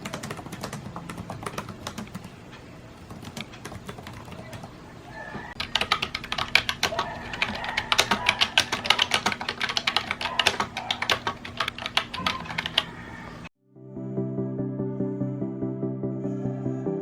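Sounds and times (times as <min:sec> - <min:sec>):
fast typing on keyboard: 0:00.0 - 0:02.4, 0:03.0 - 0:04.8, 0:05.5 - 0:12.9.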